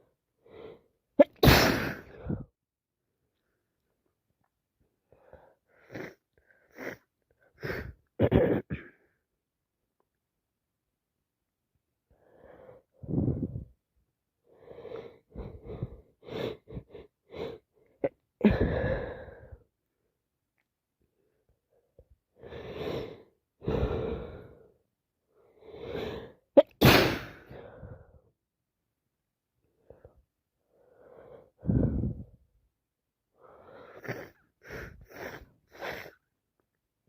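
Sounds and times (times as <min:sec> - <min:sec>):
woman sneezing: 0:01.2 - 0:02.1, 0:26.6 - 0:27.4
gasping breaths: 0:14.6 - 0:19.6, 0:29.8 - 0:32.4, 0:33.4 - 0:36.2.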